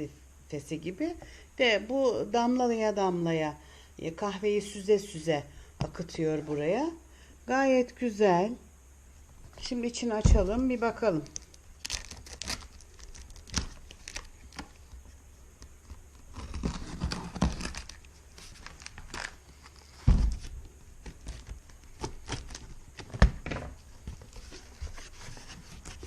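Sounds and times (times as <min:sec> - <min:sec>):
paper and plastic rustling: 0:11.2 - 0:26.0.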